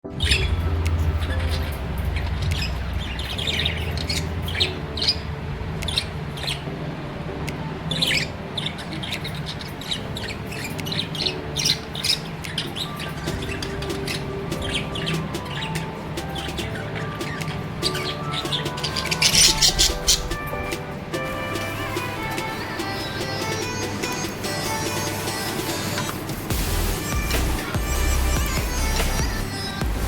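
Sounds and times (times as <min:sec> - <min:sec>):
low background music: 0:00.0 - 0:30.0
budgerigars chirping: 0:00.1 - 0:06.7, 0:07.9 - 0:20.9.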